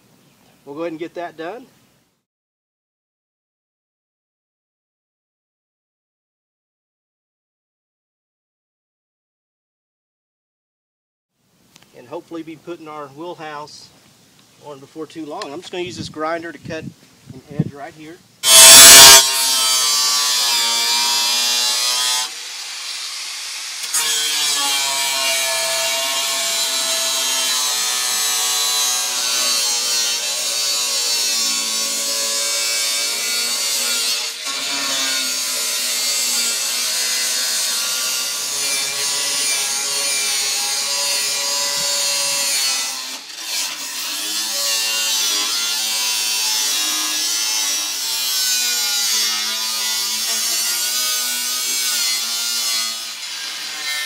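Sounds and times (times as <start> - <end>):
power grinder cutting steel: 18.4 - 54.0.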